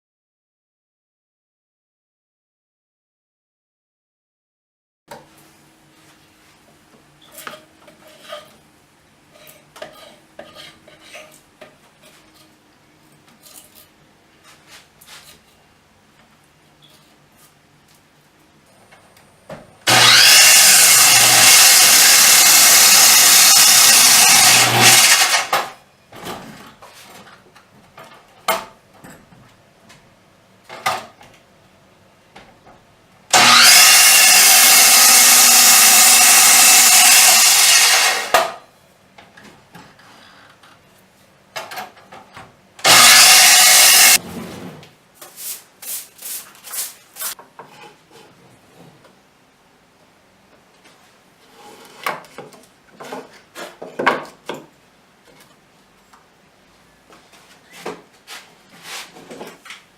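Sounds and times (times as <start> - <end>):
power tool working wood: 19.8 - 25.7, 33.3 - 38.6, 42.8 - 44.2
wood knocking and clattering: 52.0 - 54.7.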